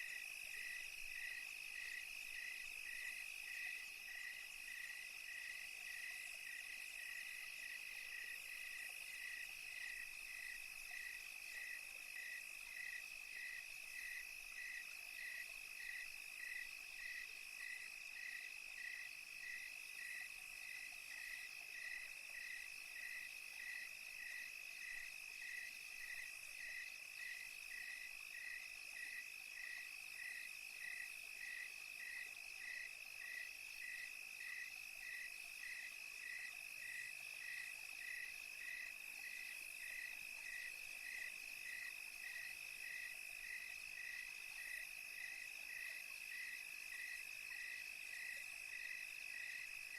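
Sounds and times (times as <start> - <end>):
cricket continuous trill: 0.0 - 49.9
cricket pulsing chirp: 0.0 - 49.9.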